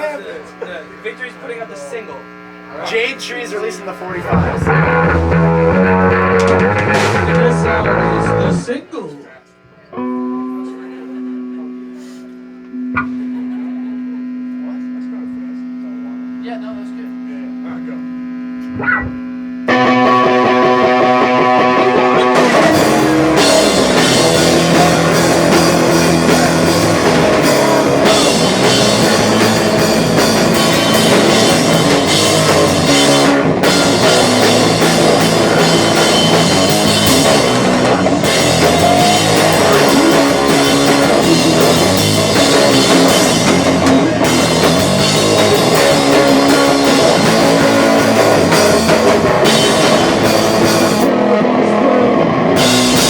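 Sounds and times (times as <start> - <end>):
live rock band playing: 4.2 - 8.7, 13.0 - 13.3, 18.8 - 53.0
held guitar note ringing: 9.9 - 14.7, 18.7 - 51.0.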